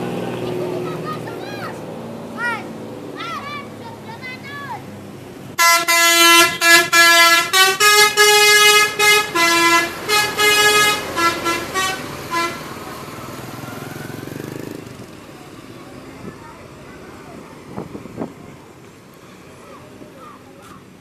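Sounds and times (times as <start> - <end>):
musical bus air horn: 5.6 - 12.9.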